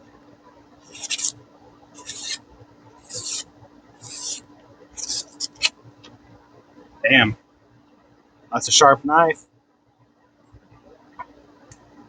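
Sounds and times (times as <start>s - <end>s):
knife cutting hiss: 0.9s - 1.4s, 2.0s - 2.4s, 3.0s - 4.4s, 5.0s - 5.8s.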